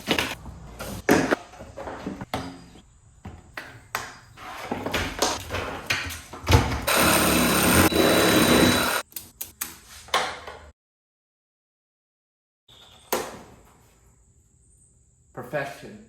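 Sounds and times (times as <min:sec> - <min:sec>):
power tool running: 0:06.9 - 0:09.0.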